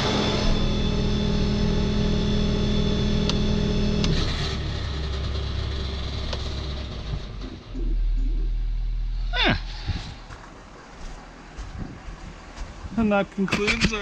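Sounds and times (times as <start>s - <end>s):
engine running steadily: 0.0s - 14.0s.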